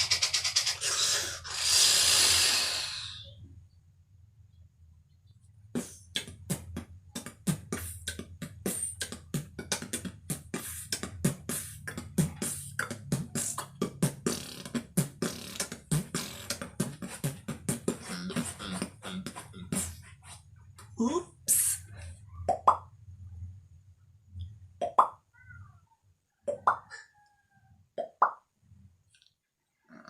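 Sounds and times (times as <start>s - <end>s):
beatboxing clicks pops and hisses: 5.8s - 20.0s.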